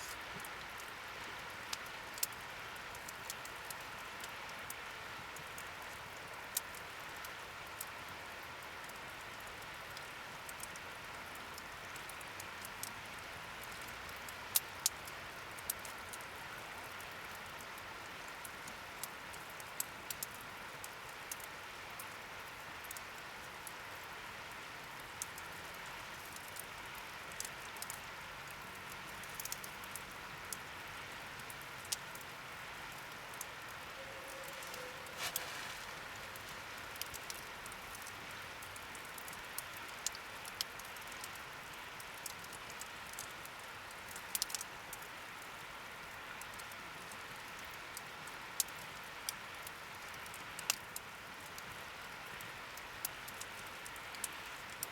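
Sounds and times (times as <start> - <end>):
campfire crackling and popping: 1.6 - 4.7, 13.7 - 16.3, 16.9 - 22.2, 24.5 - 30.7, 32.9 - 45.1, 46.4 - 51.7, 52.8 - 54.9
fire hiss: 34.0 - 37.5.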